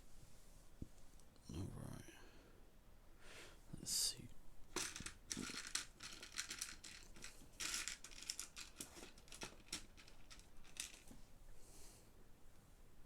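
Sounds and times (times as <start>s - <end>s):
plastic pieces clicking and rattling: 4.8s - 11.2s.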